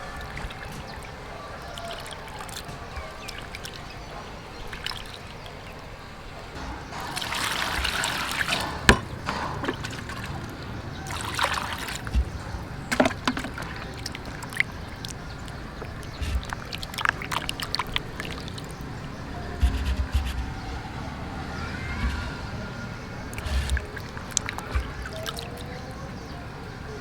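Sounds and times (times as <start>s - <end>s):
water sloshing and trickling: 0.0s - 27.0s
sharp clicks and knocks: 6.6s - 11.1s, 12.0s - 20.8s, 23.3s - 25.7s.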